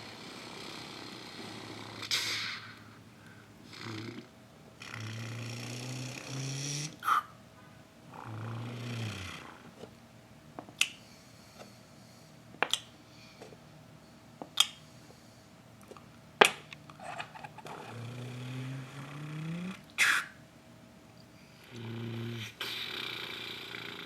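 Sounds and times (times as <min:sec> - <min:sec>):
vehicle noise made by mouth: 0:03.7 - 0:07.4, 0:17.0 - 0:20.4, 0:21.6 - 0:24.0.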